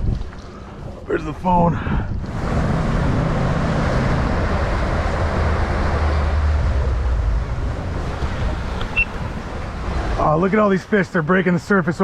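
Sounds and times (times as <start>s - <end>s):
boat engine rumbling: 0.0s - 12.0s
water noise: 0.0s - 12.0s
wind: 0.0s - 12.0s.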